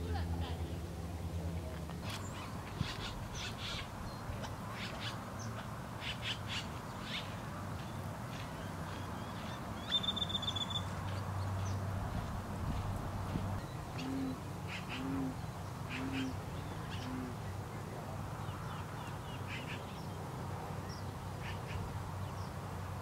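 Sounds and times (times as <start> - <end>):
birds calling: 0.7 - 22.8.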